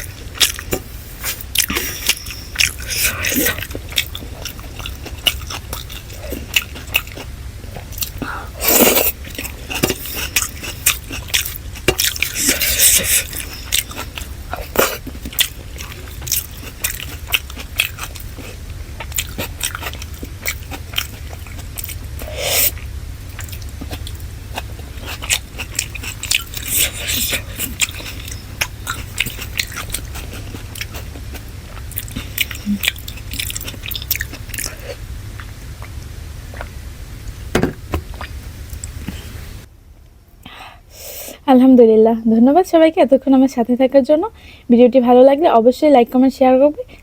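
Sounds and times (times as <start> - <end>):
wet chewing and lip smacks: 0.0 - 36.8
steady low hum: 0.0 - 47.0.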